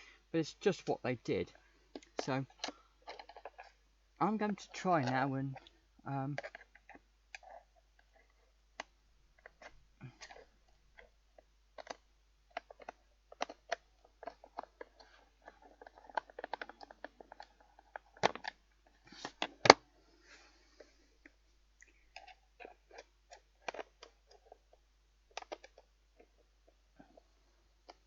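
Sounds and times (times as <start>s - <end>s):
screwdriver clicking and scraping: 2.0s - 3.8s, 6.4s - 19.8s, 22.0s - 26.4s.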